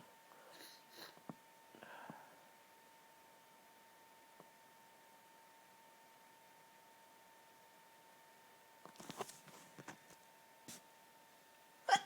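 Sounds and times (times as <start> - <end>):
faint breaths: 0.3 - 2.6.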